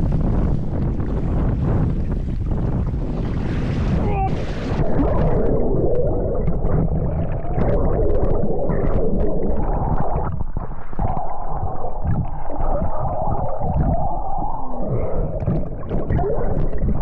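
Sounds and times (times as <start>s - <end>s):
wind buffeting microphone: 0.0s - 17.0s
paddle splashing water: 2.0s - 14.6s.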